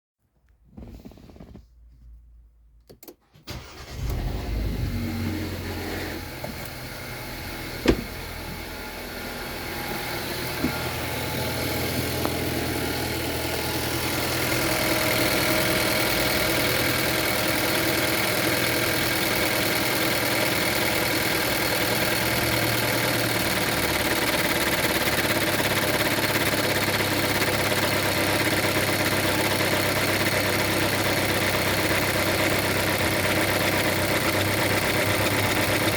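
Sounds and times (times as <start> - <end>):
car engine starting and idling: 2.8 - 35.9.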